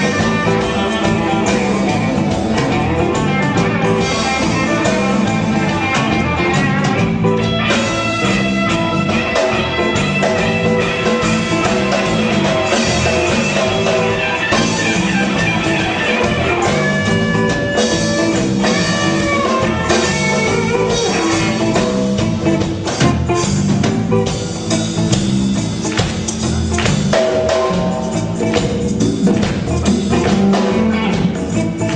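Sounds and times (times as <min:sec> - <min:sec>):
electric guitar: 0:00.0 - 0:31.9
live rock band playing: 0:00.0 - 0:31.9.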